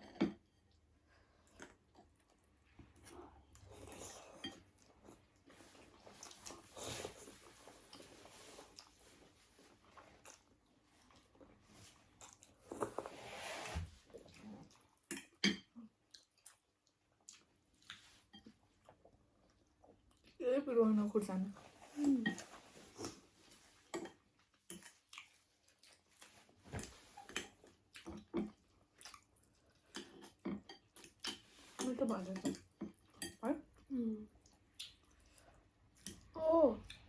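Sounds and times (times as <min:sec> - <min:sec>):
chewing food: 0:00.5 - 0:13.1, 0:14.0 - 0:20.5, 0:21.6 - 0:37.0
dishes and cutlery clinking: 0:15.1 - 0:15.8.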